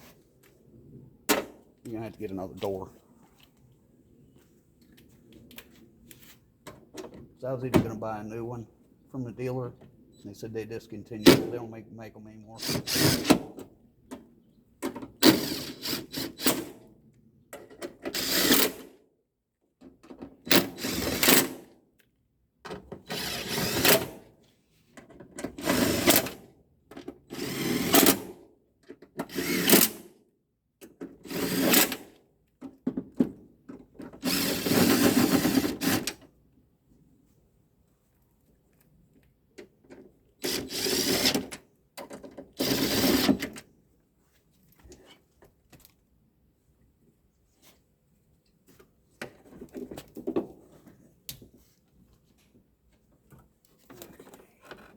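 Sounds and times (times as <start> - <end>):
power drill-driver running: 29.3 - 29.8, 34.3 - 36.0, 42.6 - 43.3.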